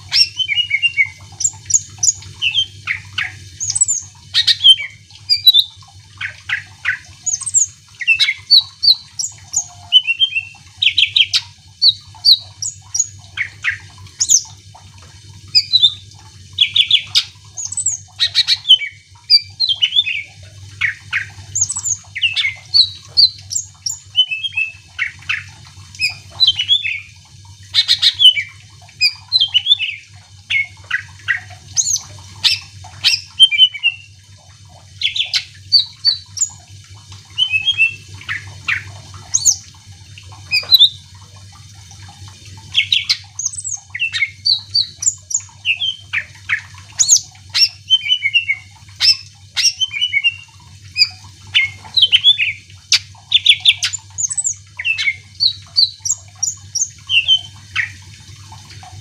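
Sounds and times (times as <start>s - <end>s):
steady low hum: 0.0s - 59.0s
bird singing whistles and trills: 0.1s - 14.5s, 15.5s - 16.0s, 16.6s - 27.1s, 27.7s - 34.1s, 35.0s - 36.6s, 37.3s - 39.6s, 40.5s - 41.0s, 42.7s - 58.0s.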